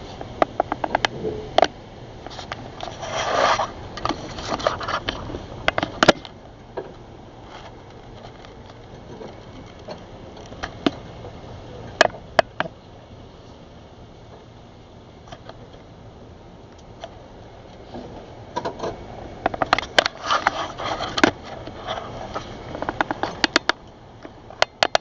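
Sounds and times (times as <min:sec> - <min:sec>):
scrape: 0:02.3 - 0:05.0, 0:20.1 - 0:22.6
hard objects clicking and knocking: 0:22.8 - 0:23.8, 0:24.6 - 0:25.0.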